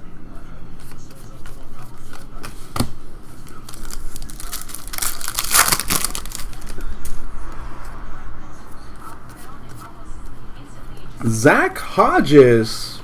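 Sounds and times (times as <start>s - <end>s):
plastic wrapper crinkling and tearing: 3.5s - 6.8s.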